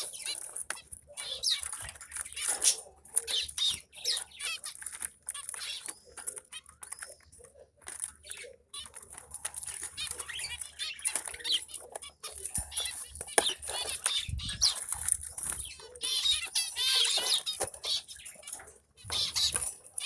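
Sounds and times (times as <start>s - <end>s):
finches chirping: 0.0s - 20.0s.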